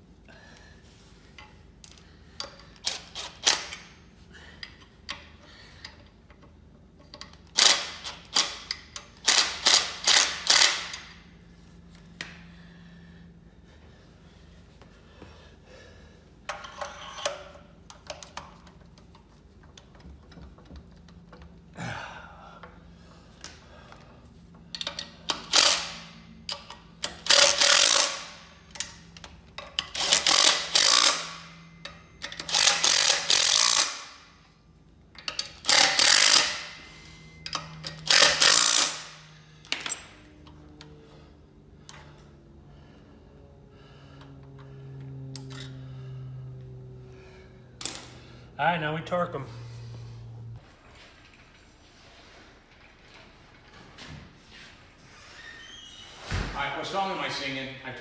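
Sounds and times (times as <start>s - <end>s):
power tool bursts: 9.2s - 11.0s, 25.4s - 26.1s, 27.1s - 28.4s, 29.9s - 31.5s, 32.3s - 34.2s, 35.6s - 37.1s, 38.0s - 39.2s.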